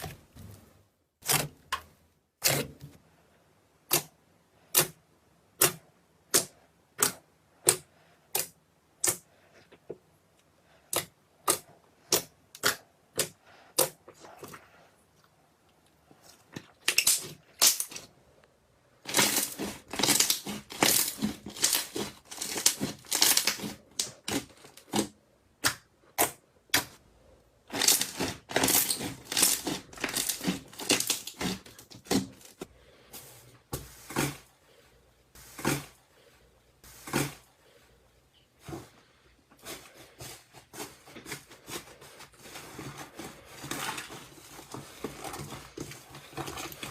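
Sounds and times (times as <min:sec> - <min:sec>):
slime crackling squishes: 0:19.0 - 0:25.2, 0:27.6 - 0:32.7.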